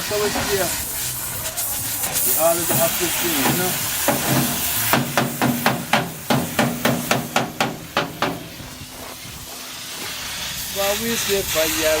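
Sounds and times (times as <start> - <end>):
steady hiss: 0.0 - 12.0
hammer striking metal: 2.7 - 8.5.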